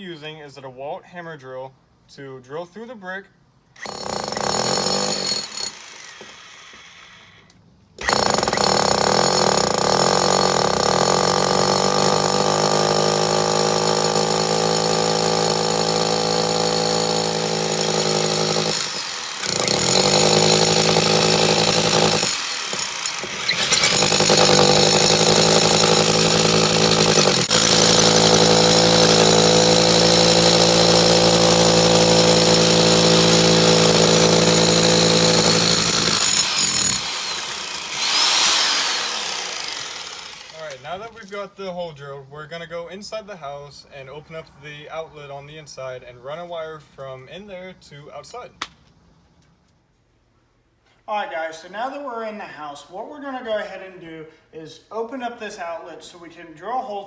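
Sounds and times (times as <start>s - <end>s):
hammer drill boring through brick: 3.8s - 41.0s.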